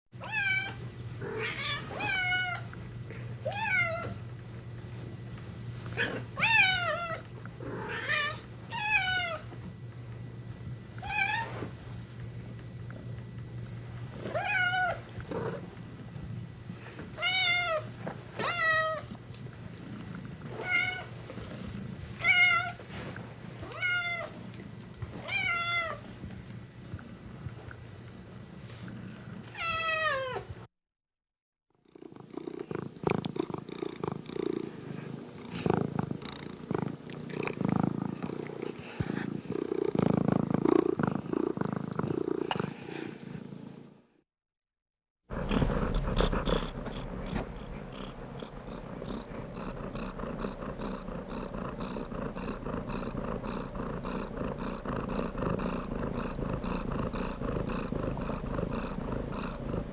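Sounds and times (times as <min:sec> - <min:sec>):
cat meowing: 0:00.2 - 0:02.6
cat purring: 0:12.4 - 0:17.1, 0:18.8 - 0:27.8, 0:31.8 - 0:43.6, 0:45.3 - 0:59.9.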